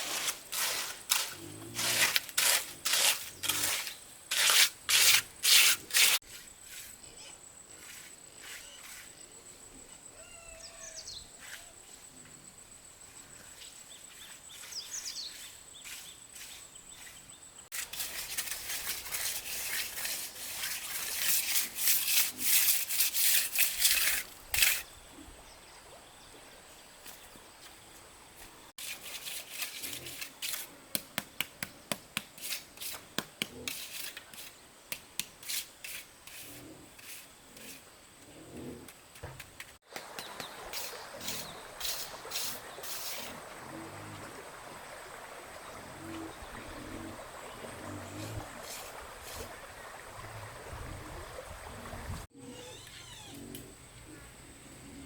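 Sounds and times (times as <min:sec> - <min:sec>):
rough scraping strokes: 0:00.0 - 0:09.3, 0:14.1 - 0:24.9, 0:28.8 - 0:30.8, 0:32.4 - 0:34.6, 0:35.4 - 0:37.9, 0:40.6 - 0:43.6, 0:47.9 - 0:49.8.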